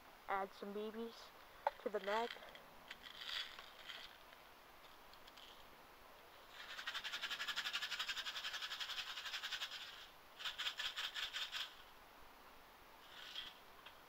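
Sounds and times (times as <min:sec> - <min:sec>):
bbs rattling in shaken magazine: 0:01.7 - 0:04.3, 0:06.5 - 0:11.8.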